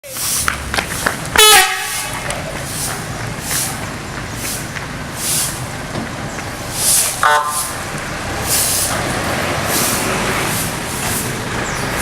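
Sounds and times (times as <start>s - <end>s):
bus engine rumble: 0.0s - 12.0s
multi-tone bus horn: 1.4s - 2.3s, 7.2s - 7.8s.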